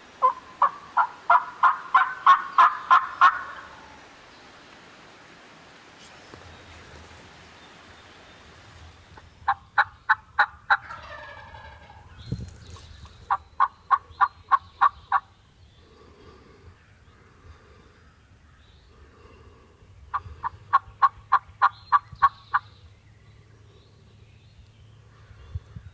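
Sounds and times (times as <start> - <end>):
turkey yelping: 0.2 - 3.8, 9.5 - 12.1.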